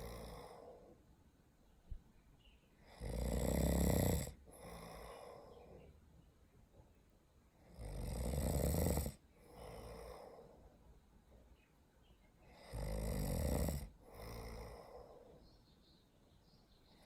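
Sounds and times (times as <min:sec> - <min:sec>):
loud snoring: 0:00.0 - 0:00.9, 0:02.9 - 0:05.4, 0:07.6 - 0:10.4, 0:12.5 - 0:15.3
soft breath: 0:04.5 - 0:06.1, 0:09.3 - 0:11.0, 0:14.0 - 0:16.1.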